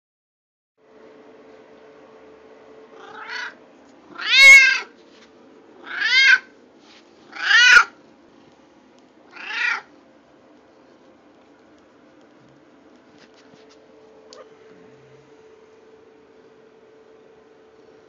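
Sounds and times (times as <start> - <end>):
cat meowing: 3.0 - 4.9, 5.8 - 6.5, 7.3 - 8.0, 9.3 - 9.9.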